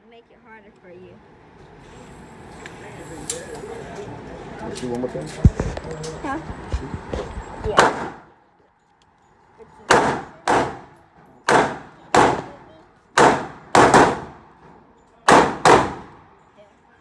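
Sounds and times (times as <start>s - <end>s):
gunshots: 7.8s - 8.3s, 9.9s - 14.5s, 15.3s - 16.3s.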